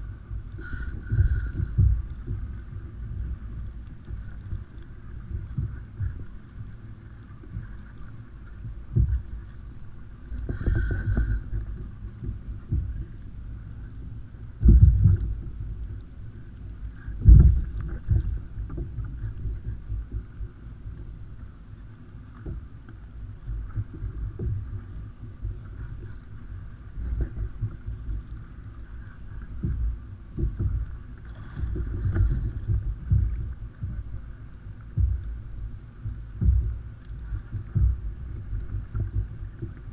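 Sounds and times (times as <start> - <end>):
steady low hum: 0.0 - 39.9
water slapping against kayak hull: 23.4 - 39.9.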